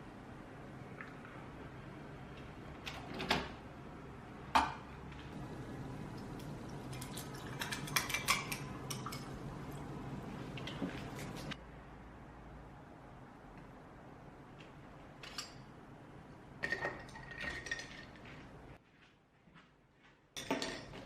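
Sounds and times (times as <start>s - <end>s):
dishes and cutlery clinking: 7.0s - 9.4s, 20.4s - 21.0s.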